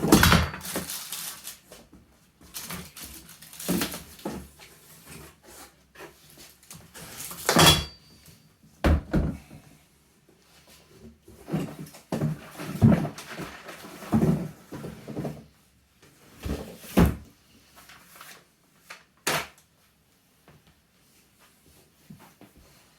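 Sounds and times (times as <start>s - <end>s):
objects knocking and rustling: 0.0s - 5.4s, 11.4s - 15.5s.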